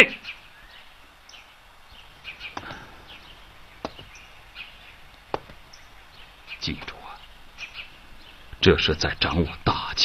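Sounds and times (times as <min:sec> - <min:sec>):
small birds chirping: 0:00.0 - 0:10.0
sharp taps: 0:02.5 - 0:02.9, 0:03.8 - 0:04.2, 0:05.1 - 0:05.7.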